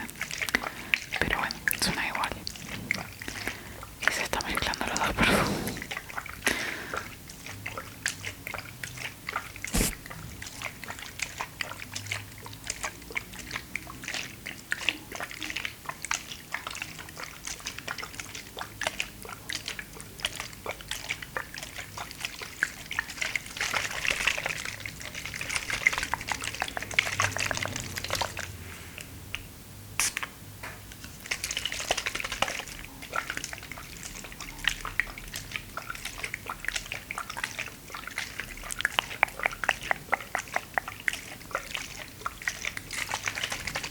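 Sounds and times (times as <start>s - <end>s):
water dripping and splashing: 7.0s - 28.6s, 30.9s - 43.9s
water sloshing: 22.3s - 28.6s, 42.4s - 43.9s.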